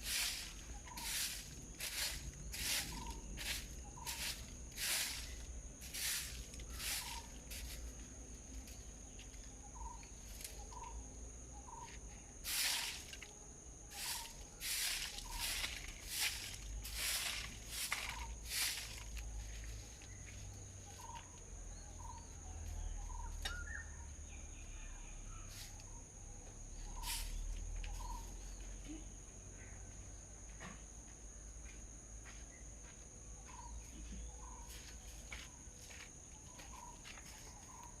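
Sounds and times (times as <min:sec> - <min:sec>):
high-pitched insect drone: 0:00.1 - 0:08.1, 0:13.9 - 0:21.3
bird chirps: 0:00.5 - 0:07.8, 0:08.7 - 0:13.2, 0:14.0 - 0:29.9, 0:33.4 - 0:38.0.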